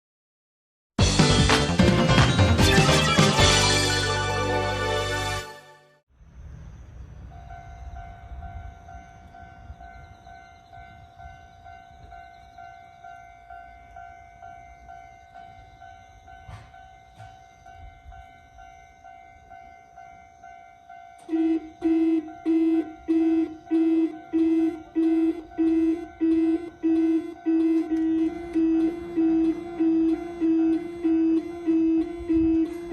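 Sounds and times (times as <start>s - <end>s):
loud pulsing warning tone: 6.8s - 32.9s
steady buzzing warning tone: 11.3s - 32.9s.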